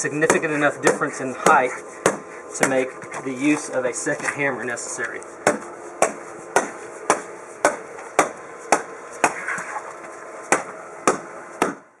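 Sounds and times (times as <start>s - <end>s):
hammer strikes: 0.2s - 2.8s, 5.4s - 9.4s, 10.5s - 11.9s.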